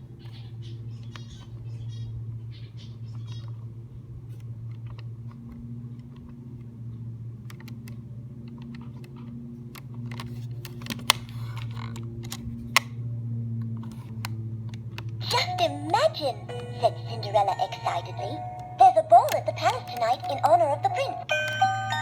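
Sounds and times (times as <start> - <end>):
low electrical hum: 0.0 - 22.0
plastic toy clock buttons clicking: 7.4 - 12.9, 18.4 - 22.0.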